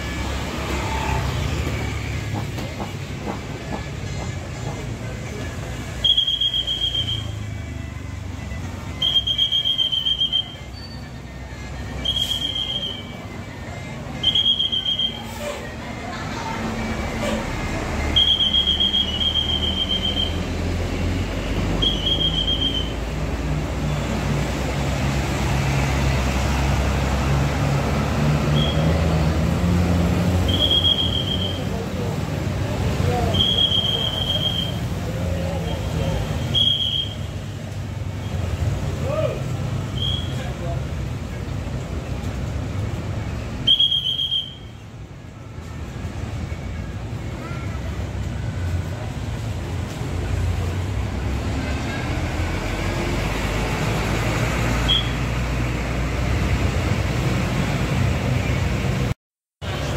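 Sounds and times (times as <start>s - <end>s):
bus engine rumble: 0.0s - 59.9s
shrill whistle blast: 6.0s - 7.4s, 9.0s - 11.1s, 12.0s - 13.2s, 14.2s - 15.3s, 18.0s - 20.5s, 21.5s - 23.1s, 28.5s - 29.0s, 30.5s - 31.7s, 33.2s - 34.9s, 36.4s - 37.4s, 39.9s - 40.4s, 43.6s - 44.8s, 54.8s - 55.3s.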